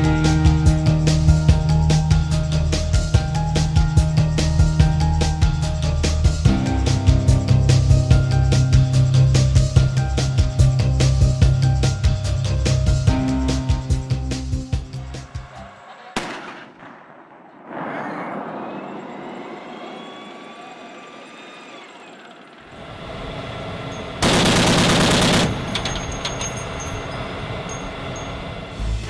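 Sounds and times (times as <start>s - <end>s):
gunfire burst: 16.1s - 20.5s, 24.2s - 25.8s
gunshot: 16.2s - 20.5s.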